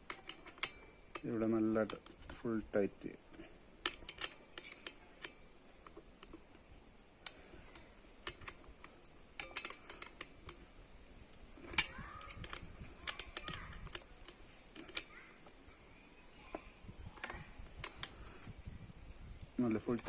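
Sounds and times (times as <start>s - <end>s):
metallic clicks of tools: 0.0s - 2.4s, 3.3s - 6.6s, 7.2s - 10.6s, 11.6s - 15.2s, 17.2s - 18.2s.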